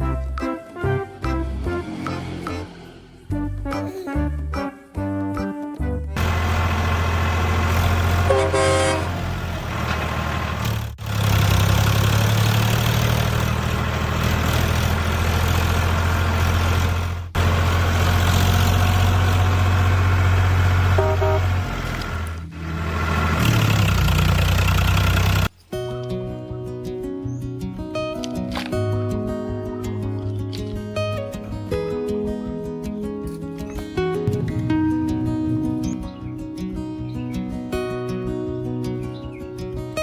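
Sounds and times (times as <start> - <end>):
short horn toots: 8.2 - 9.2, 21.0 - 21.6.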